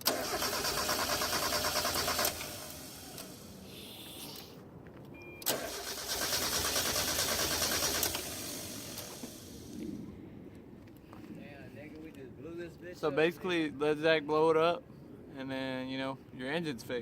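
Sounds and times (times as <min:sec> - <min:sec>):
car engine cranking on starter: 0:00.0 - 0:03.6, 0:05.4 - 0:09.8.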